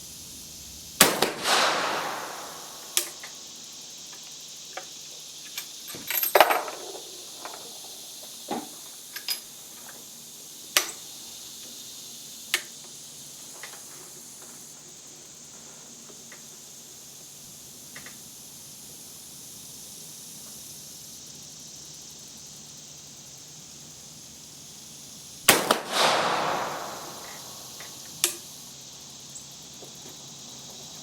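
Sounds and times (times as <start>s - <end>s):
rifle shots with echo: 1.0s - 3.3s, 25.5s - 28.0s.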